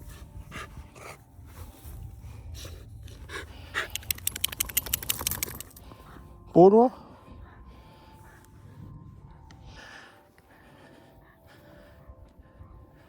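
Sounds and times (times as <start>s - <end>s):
heavy panting breaths: 0.0s - 13.0s
sharp clicks: 3.8s - 5.8s.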